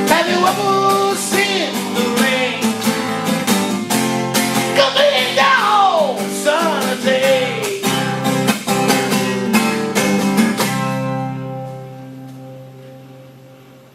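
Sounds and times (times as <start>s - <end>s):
person singing: 0.0s - 3.2s, 4.7s - 8.5s
strummed acoustic guitar: 0.0s - 13.8s.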